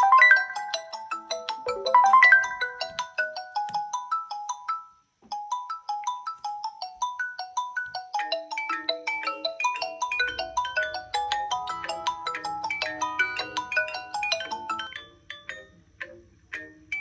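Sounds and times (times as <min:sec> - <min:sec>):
smartphone ringtone melody: 0:00.0 - 0:15.7.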